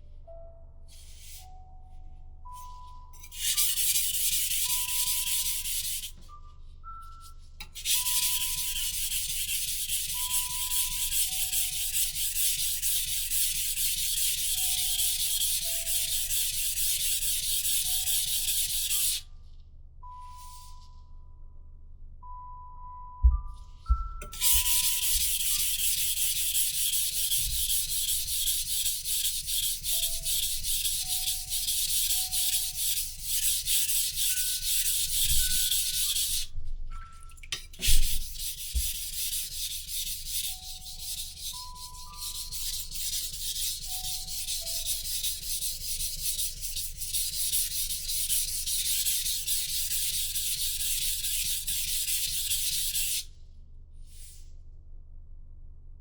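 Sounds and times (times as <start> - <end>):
soft background music: 0.0 - 51.6
knife rubbed on whetstone: 2.6 - 6.3, 7.6 - 19.2, 24.3 - 36.5, 37.6 - 53.3.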